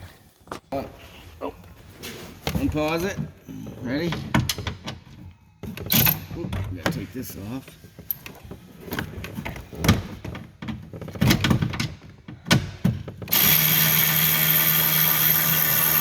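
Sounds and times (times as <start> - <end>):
tool handling knocks and clicks: 4.1 - 7.1, 7.7 - 13.4
cordless screw gun running: 13.3 - 16.0.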